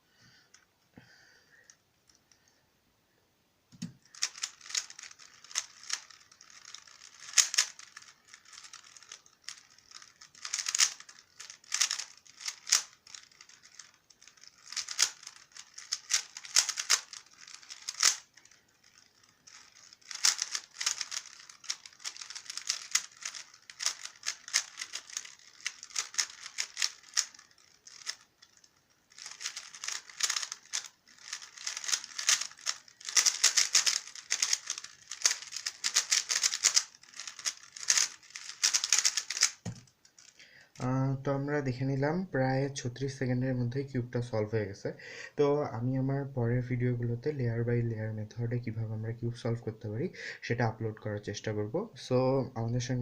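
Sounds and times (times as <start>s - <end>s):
puzzle cube plastic clicking: 3.7s - 40.4s.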